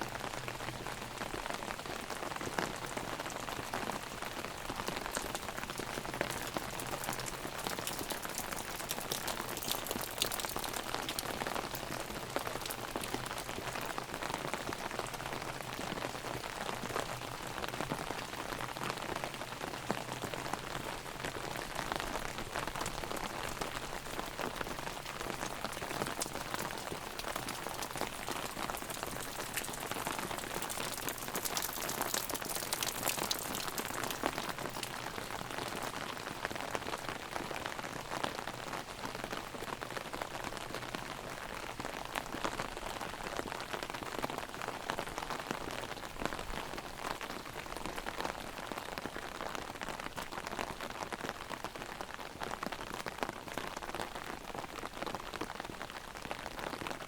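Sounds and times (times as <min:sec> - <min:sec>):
heavy rain drumming on umbrella: 0:00.0 - 0:57.0.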